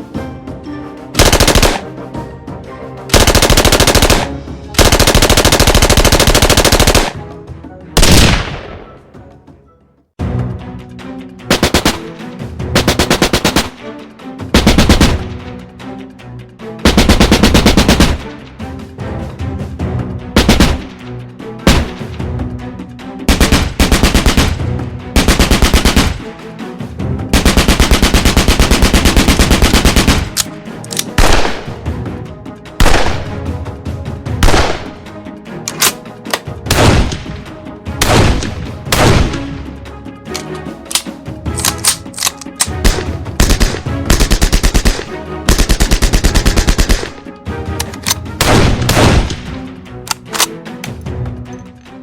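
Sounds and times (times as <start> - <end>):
background music: 0.0 - 52.0
automatic gunfire bursts: 1.2 - 1.8, 3.1 - 7.2, 27.4 - 30.4, 42.8 - 47.2
gunshots: 1.2 - 1.9, 3.1 - 7.2, 8.0 - 9.0, 11.5 - 12.2, 12.8 - 13.8, 14.6 - 15.3, 16.8 - 18.4, 20.4 - 21.0, 21.6 - 22.3, 23.3 - 26.3, 27.3 - 31.9, 32.8 - 33.5, 34.4 - 35.1, 36.6 - 39.7, 41.6 - 47.3, 48.4 - 49.7
single sharp gunshots: 8.0 - 8.9, 21.7 - 22.2, 31.2 - 31.8, 32.8 - 33.3, 34.4 - 35.0, 36.7 - 37.4, 38.0 - 39.5, 48.4 - 49.6.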